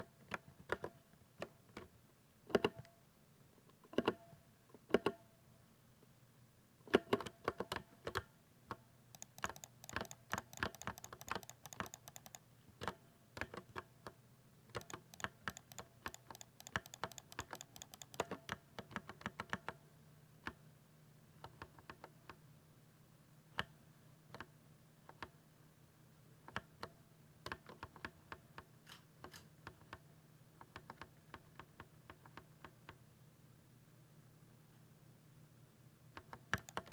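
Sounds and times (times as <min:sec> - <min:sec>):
mechanical keyboard typing: 0:09.1 - 0:12.4, 0:14.8 - 0:18.6, 0:36.5 - 0:36.9.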